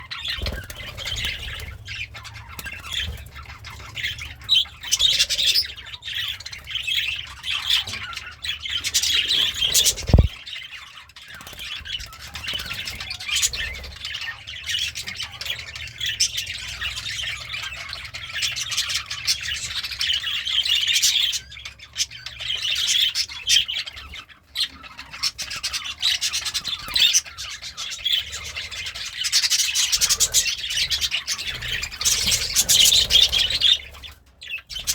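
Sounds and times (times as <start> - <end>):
budgerigar chattering and warbling: 0.0 - 11.0.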